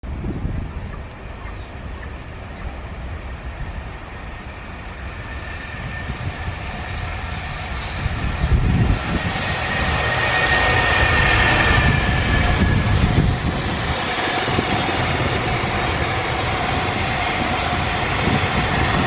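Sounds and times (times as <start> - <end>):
high locomotive whine: 0.1 - 19.0
train wheels rumbling on rail: 0.1 - 19.0.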